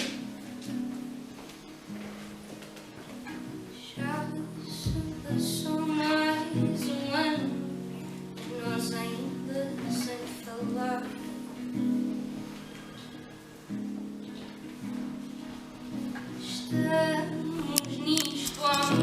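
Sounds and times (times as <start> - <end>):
acoustic guitar playing: 0.0 - 19.0
woman singing: 3.8 - 11.5, 16.3 - 19.0.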